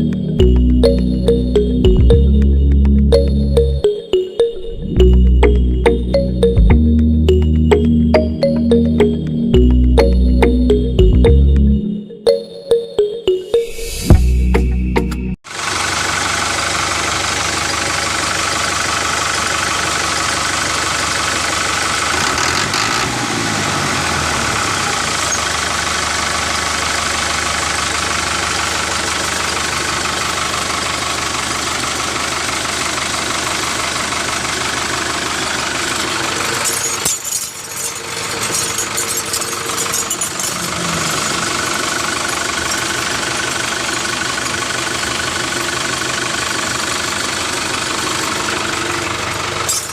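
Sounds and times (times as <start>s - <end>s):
tractor engine idling: 0.0s - 3.9s, 14.4s - 23.0s, 24.2s - 49.9s.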